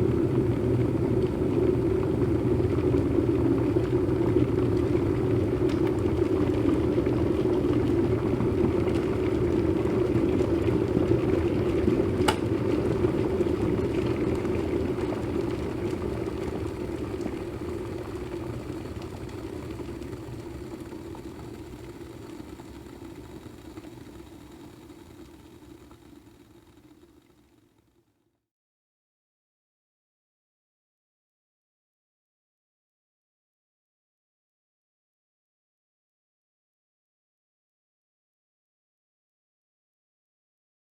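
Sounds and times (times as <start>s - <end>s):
kettle boiling water: 0.0s - 28.2s
kettle switch click: 12.2s - 12.5s.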